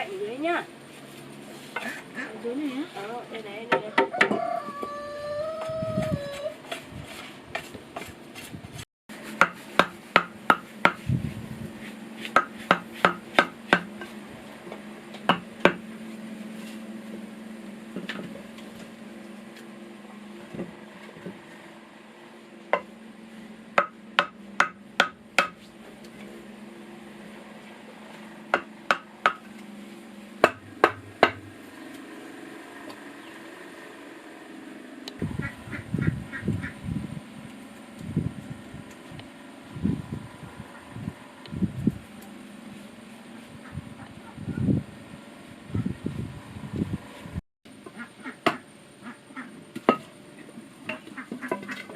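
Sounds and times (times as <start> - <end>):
hammer striking wood: 9.4 - 11.0, 12.2 - 13.9, 15.3 - 15.8, 23.8 - 25.6, 28.5 - 29.5, 30.4 - 31.4.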